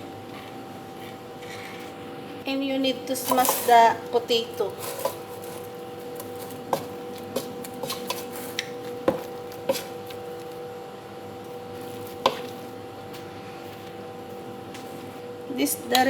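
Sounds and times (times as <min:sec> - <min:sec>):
steady hum: 0:00.0 - 0:16.0
potatoes being mashed: 0:04.6 - 0:10.6, 0:11.5 - 0:12.8.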